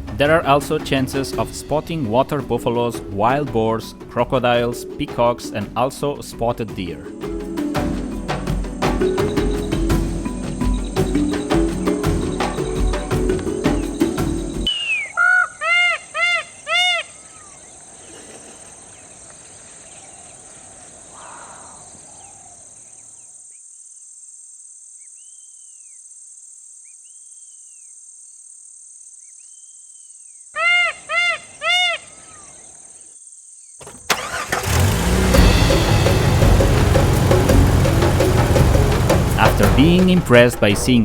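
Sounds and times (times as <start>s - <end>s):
bird calling: 7.6s - 23.3s, 30.6s - 33.1s
vehicle engine: 33.8s - 40.8s.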